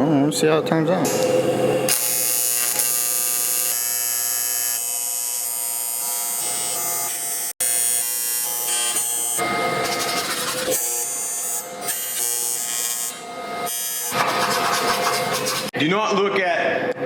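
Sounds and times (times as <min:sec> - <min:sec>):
welder buzzing crackle: 0:01.1 - 0:15.7.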